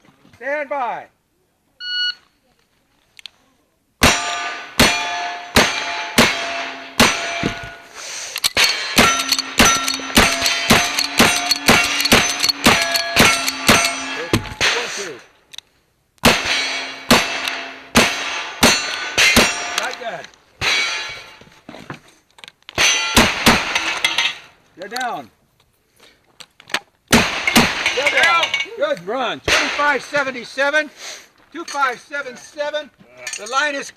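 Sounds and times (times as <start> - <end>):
gunshots: 4.0 - 7.8, 8.6 - 15.2, 16.2 - 21.3, 22.8 - 24.1, 27.1 - 28.4, 29.5 - 30.3
steel target clanging: 4.0 - 7.9, 8.5 - 15.2, 16.3 - 21.4, 22.8 - 24.5, 27.2 - 28.8, 29.5 - 30.2.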